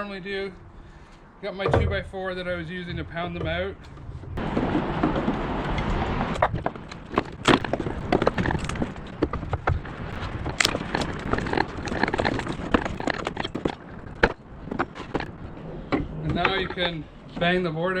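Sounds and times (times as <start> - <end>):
wooden knocks and cracks: 2.9 - 16.8.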